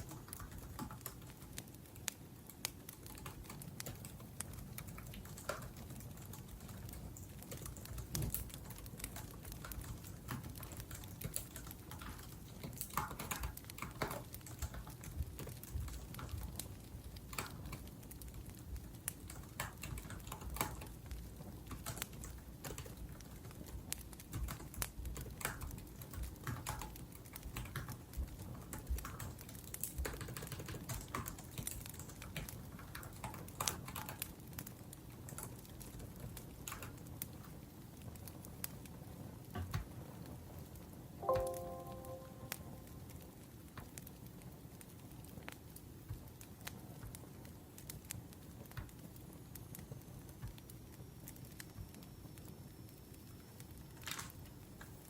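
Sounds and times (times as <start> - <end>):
laptop keyboard typing: 0.0 - 34.3, 35.2 - 37.0
wood fire crackling: 0.0 - 55.0.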